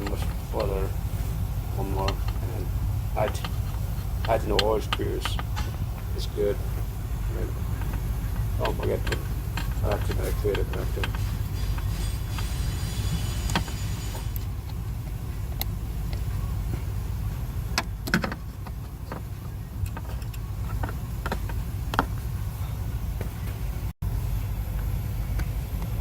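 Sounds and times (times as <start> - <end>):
steady low rumble: 0.0 - 26.0
clicks and knocks of handling: 3.2 - 6.2, 7.7 - 12.5, 17.8 - 22.2.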